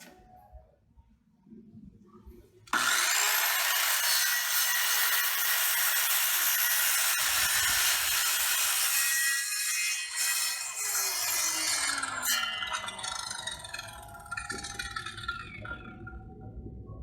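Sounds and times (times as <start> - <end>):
circular saw cutting wood: 2.7 - 15.9.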